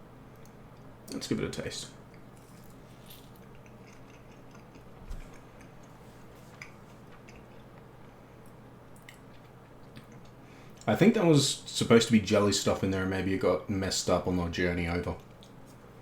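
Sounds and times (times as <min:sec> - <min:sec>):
steady low hum: 0:00.0 - 0:16.0
chewing marshmallow: 0:02.2 - 0:07.9.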